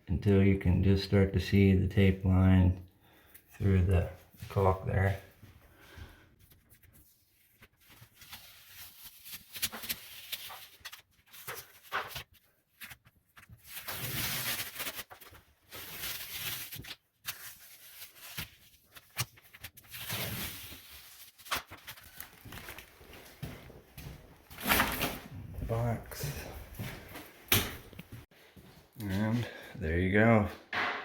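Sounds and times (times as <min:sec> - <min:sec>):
rustling and scraping handling noises: 0:03.3 - 0:30.3.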